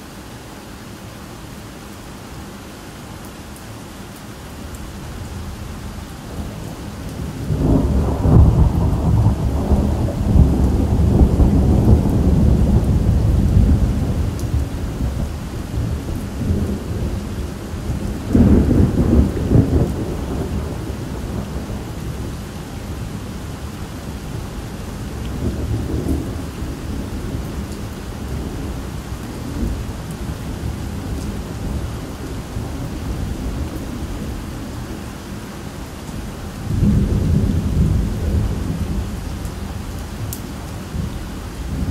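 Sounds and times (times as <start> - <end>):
steady rain: 0.0 - 41.9
thunder rumbling: 6.3 - 23.1, 36.6 - 41.9.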